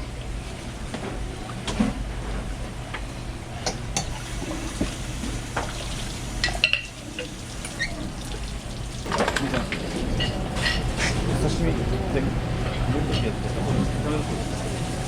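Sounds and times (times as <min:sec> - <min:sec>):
steady low hum: 0:00.0 - 0:15.0
utensils and dishes clinking: 0:06.4 - 0:08.4, 0:09.0 - 0:14.9.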